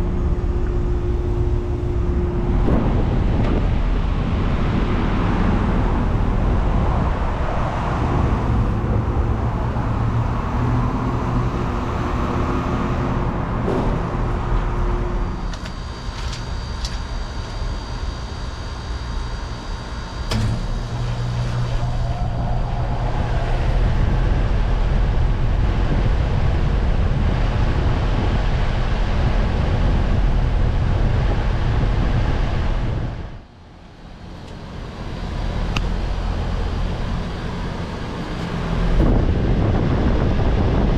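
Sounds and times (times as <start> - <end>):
heat pump compressor and fan hum: 0.0 - 40.9
heat pump click: 13.7 - 17.6, 20.1 - 21.7, 34.0 - 37.3.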